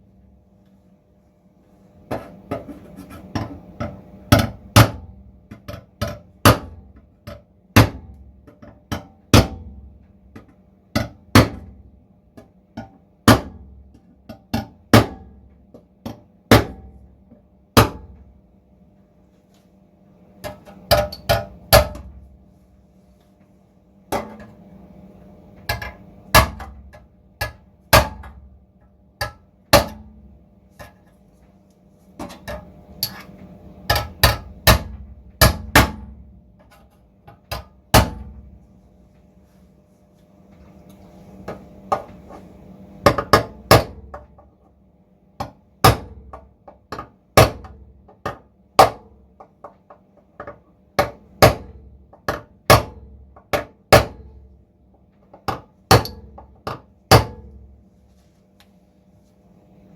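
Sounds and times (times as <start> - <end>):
faint steady hum: 0.0 - 59.9
hammer striking steel panel: 20.4 - 22.2, 25.7 - 28.6, 33.8 - 36.2, 37.4 - 38.6.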